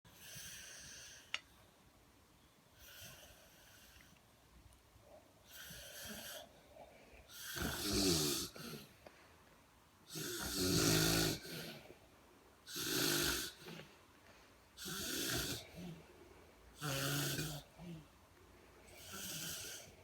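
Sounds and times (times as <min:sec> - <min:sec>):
snoring with buzzing vibration: 0:00.1 - 0:01.3, 0:05.5 - 0:06.5, 0:07.3 - 0:09.0, 0:10.1 - 0:12.0, 0:12.6 - 0:14.0, 0:14.8 - 0:16.1, 0:16.7 - 0:18.1, 0:18.8 - 0:20.0.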